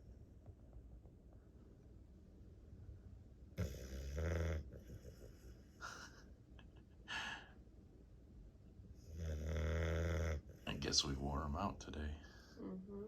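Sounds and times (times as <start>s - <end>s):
dog snoring: 3.6s - 5.6s, 9.0s - 10.9s.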